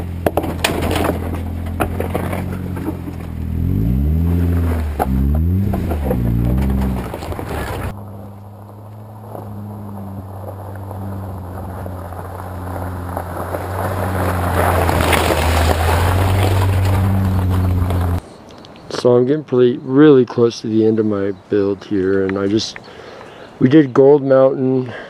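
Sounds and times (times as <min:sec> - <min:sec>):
engine revving: 0:00.0 - 0:18.2.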